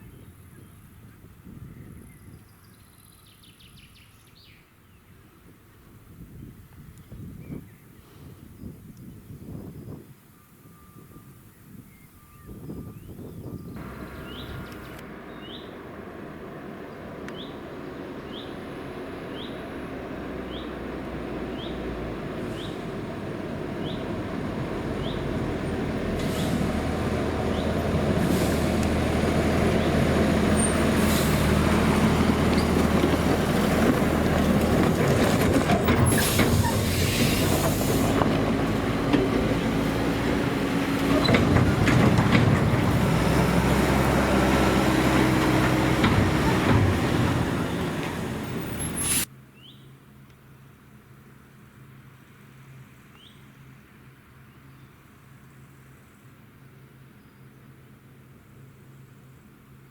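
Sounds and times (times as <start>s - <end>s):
diesel harvest machinery: 13.7s - 49.3s.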